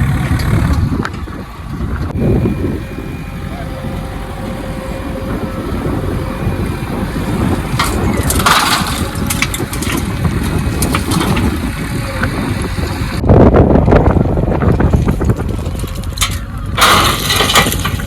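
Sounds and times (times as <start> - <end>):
heavy machinery diesel engine: 0.0 - 18.0
crunching and clattering impacts: 3.9 - 13.2, 13.9 - 18.0.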